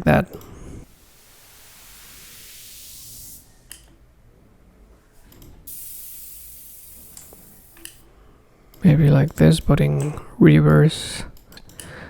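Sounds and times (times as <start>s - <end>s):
white-noise hiss sweep: 0.8s - 3.8s, 5.7s - 8.0s.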